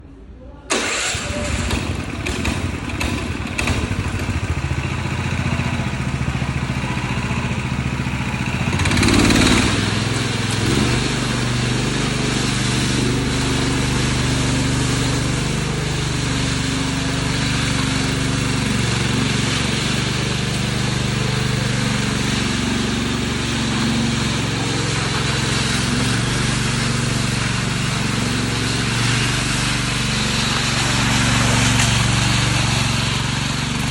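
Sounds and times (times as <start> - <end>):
power trowel engine running: 0.7 - 33.9.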